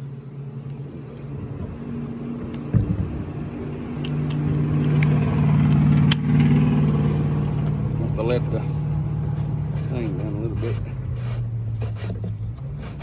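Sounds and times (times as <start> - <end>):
vehicle engine humming: 0.0 - 13.0
heavy thump: 2.6 - 3.6.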